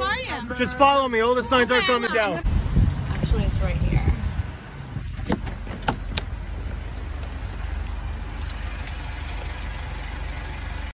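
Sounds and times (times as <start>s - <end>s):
car engine running: 0.0s - 10.9s.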